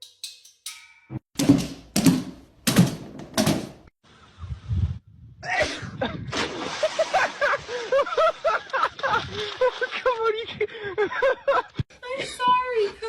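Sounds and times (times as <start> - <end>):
loud bangs on a door: 1.4 - 3.9.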